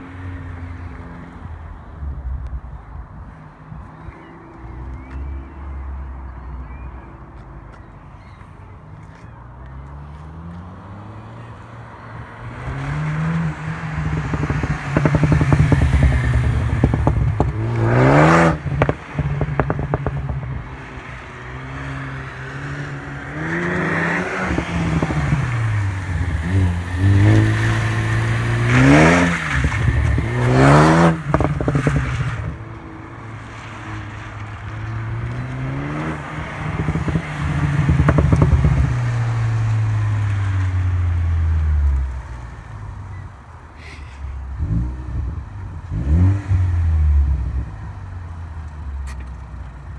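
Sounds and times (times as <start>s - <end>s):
car engine revving: 10.1s - 43.2s, 44.4s - 49.9s
exhaust pops and crackles: 12.6s - 43.2s, 44.5s - 49.9s.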